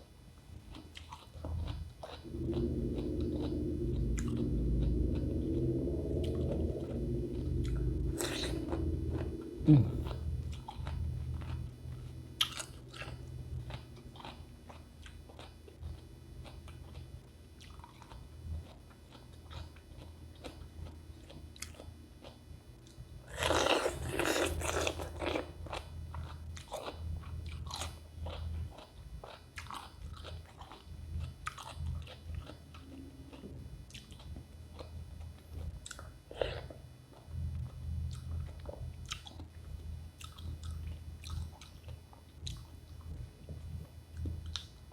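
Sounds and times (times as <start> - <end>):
wet chewing clicks: 0.7 - 6.4, 40.2 - 43.0.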